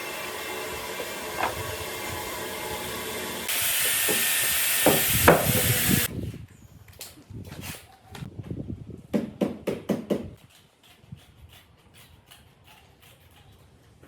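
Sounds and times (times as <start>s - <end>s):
air hissing: 0.0s - 6.1s
workshop machinery running: 0.0s - 6.1s
knocks: 4.8s - 5.8s.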